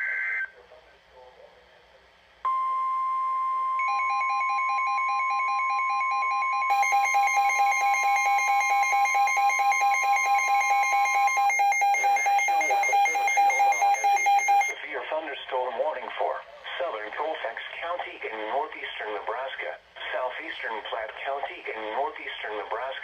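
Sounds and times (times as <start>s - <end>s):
lower pulsing beep: 2.5s - 14.7s
steady high alarm beep: 2.5s - 14.8s
announcer speaking: 9.2s - 23.0s.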